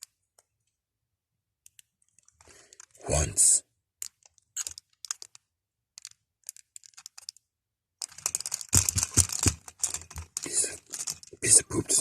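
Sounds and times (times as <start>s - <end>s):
plastic toy clicking and rattling: 4.0s - 7.4s, 8.0s - 12.0s.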